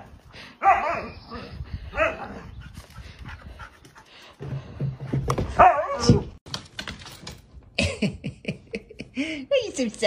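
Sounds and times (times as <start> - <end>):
dog panting: 2.5 - 5.2.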